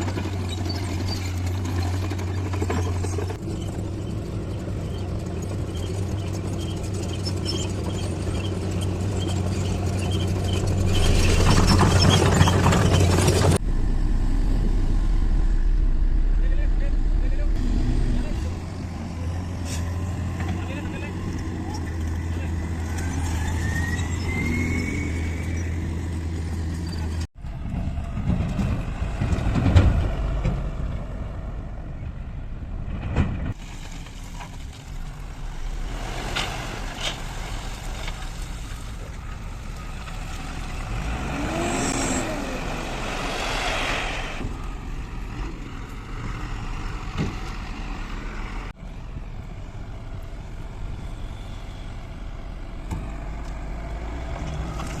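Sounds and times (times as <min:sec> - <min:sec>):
diesel engine running: 0:00.0 - 0:31.8.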